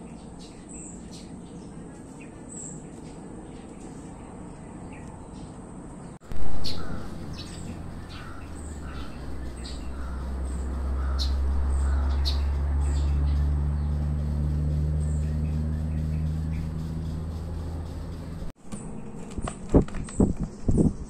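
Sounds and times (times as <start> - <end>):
small birds chirping: 0.0 - 19.1
low rumble: 6.2 - 19.1.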